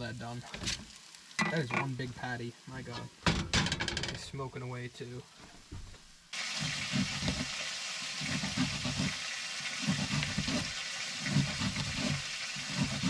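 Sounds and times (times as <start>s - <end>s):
burger patties sizzling in a pan: 6.3s - 13.0s.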